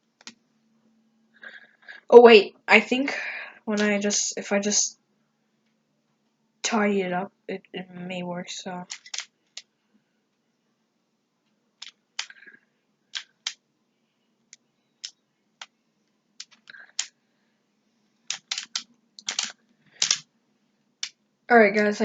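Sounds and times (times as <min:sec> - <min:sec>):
puzzle cube pieces clicking: 0:08.8 - 0:09.7, 0:11.8 - 0:13.6, 0:16.4 - 0:17.1, 0:18.2 - 0:20.3.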